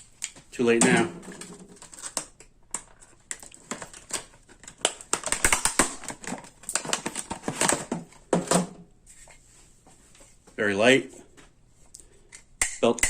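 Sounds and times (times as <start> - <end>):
plastic and cardboard packaging crinkling: 1.1 - 8.4.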